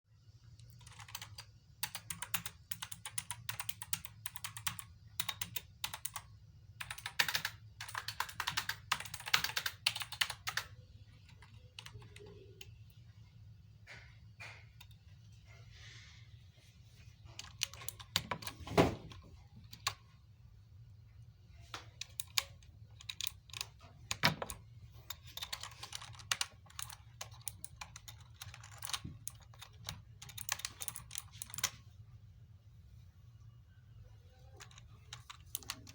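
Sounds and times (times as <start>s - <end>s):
mechanical keyboard typing: 0.6s - 12.9s, 17.2s - 20.1s, 21.6s - 31.8s, 34.6s - 35.9s.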